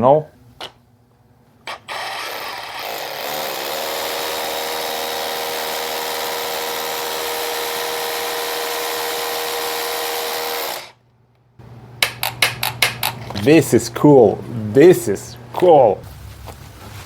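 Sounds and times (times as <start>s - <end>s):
hammer drill whining: 1.7s - 11.0s.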